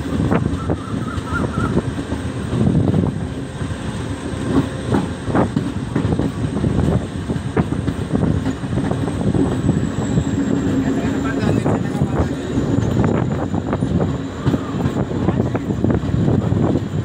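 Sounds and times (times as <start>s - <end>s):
train coach rumble: 0.0s - 17.0s
wheels clacking over rail joints: 4.4s - 17.0s.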